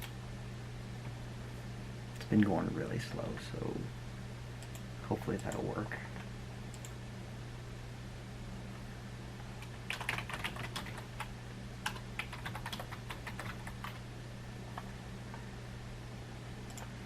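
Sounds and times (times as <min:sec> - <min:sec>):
typing on a keyboard: 0:09.6 - 0:14.0.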